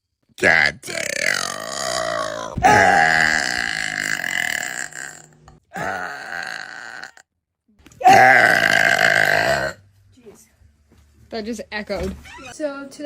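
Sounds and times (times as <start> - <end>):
woman burping: 0.5 - 7.2, 8.0 - 9.8.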